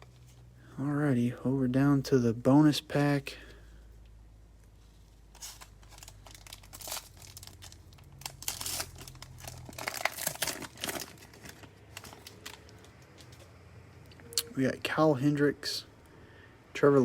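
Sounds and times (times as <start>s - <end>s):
wrapper crinkling and tearing: 5.2s - 13.5s.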